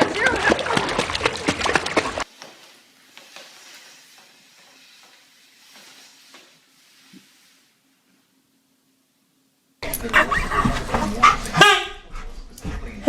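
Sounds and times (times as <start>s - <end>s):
faint hiss: 2.3s - 9.8s.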